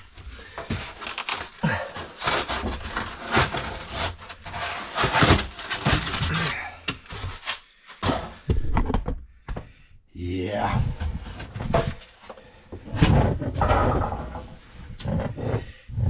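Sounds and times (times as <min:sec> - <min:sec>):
scraping and rubbing strokes: 0:00.2 - 0:08.4.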